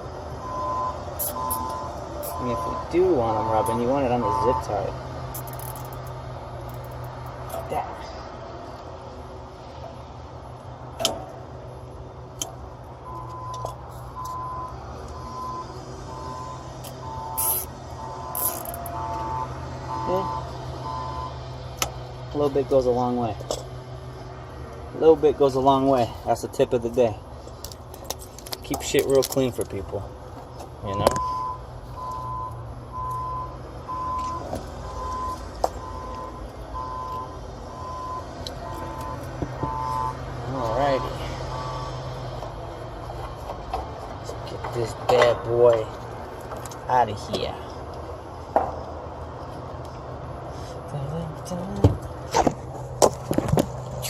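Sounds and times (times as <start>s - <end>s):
low engine hum: 0.0s - 54.0s
reversing alarm beeping: 0.4s - 4.9s, 13.0s - 21.4s, 31.1s - 42.0s.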